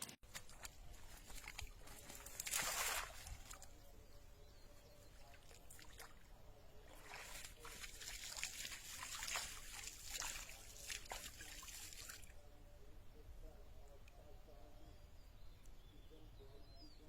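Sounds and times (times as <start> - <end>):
small splashes: 0.2 - 3.8, 5.0 - 12.4
water trickling and sloshing: 0.2 - 3.9, 4.9 - 12.4.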